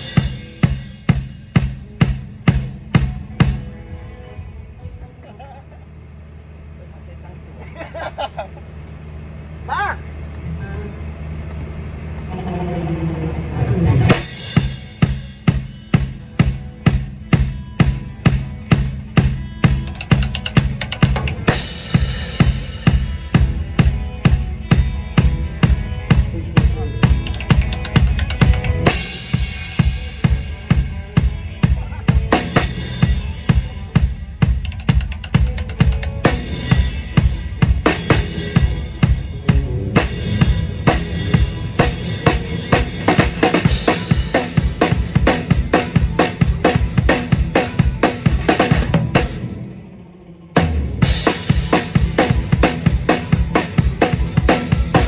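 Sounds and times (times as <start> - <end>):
drum struck evenly: 0.0 - 3.8, 14.1 - 49.4, 50.6 - 55.0
low steady hum: 0.3 - 34.6, 35.4 - 46.6
cymbal crash ringing: 13.7 - 18.1, 18.8 - 34.6, 35.4 - 50.0.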